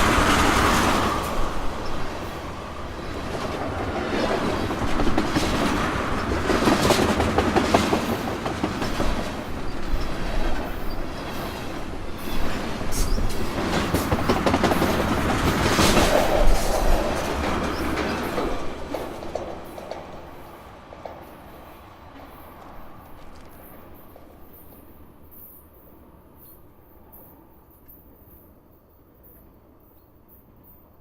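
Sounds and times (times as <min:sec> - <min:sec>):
wheels clicking over rail joints: 0:00.0 - 0:24.8
freight train rolling: 0:00.0 - 0:31.0.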